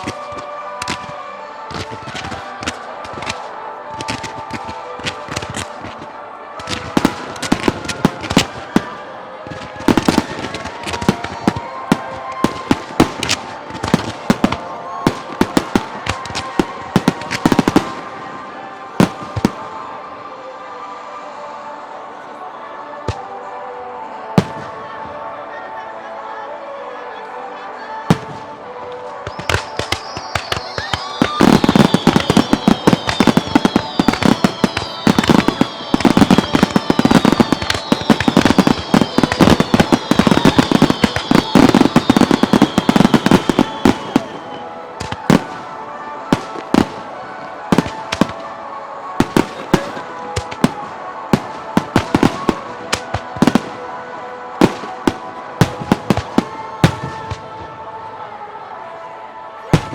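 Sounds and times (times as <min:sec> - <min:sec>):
fireworks falling whistles: 0:00.0 - 0:06.0, 0:06.6 - 0:18.2, 0:29.0 - 0:48.6, 0:49.2 - 0:53.8
fireworks bangs and crackles: 0:00.0 - 0:20.0, 0:24.4 - 0:25.2, 0:28.1 - 0:57.9.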